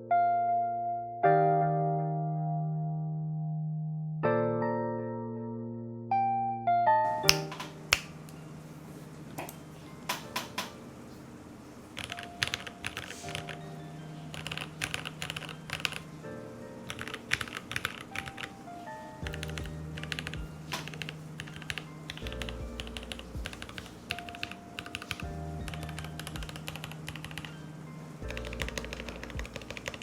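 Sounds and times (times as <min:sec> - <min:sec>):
mechanical keyboard typing: 0:12.0 - 0:13.7, 0:14.3 - 0:16.1, 0:16.8 - 0:18.6, 0:19.3 - 0:27.6, 0:28.3 - 0:30.0
background music with bass: 0:19.2 - 0:24.3, 0:25.2 - 0:29.8.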